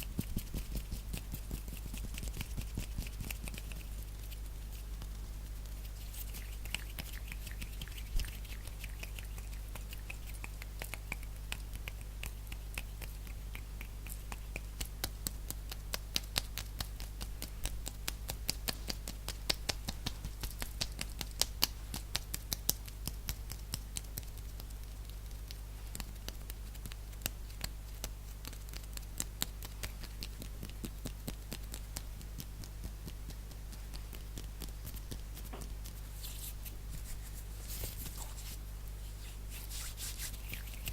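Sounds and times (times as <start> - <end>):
steady low hum: 0.0 - 40.9
hands and fingers tapping: 6.2 - 24.7.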